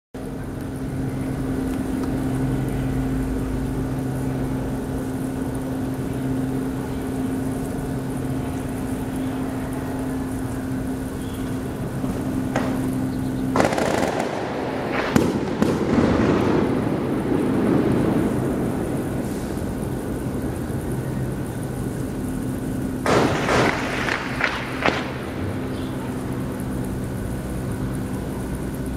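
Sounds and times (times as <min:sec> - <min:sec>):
crackling rumbling echo: 0:00.2 - 0:28.9
steady low hum: 0:00.2 - 0:28.9
loud explosive bangs: 0:13.5 - 0:19.5, 0:23.0 - 0:25.2.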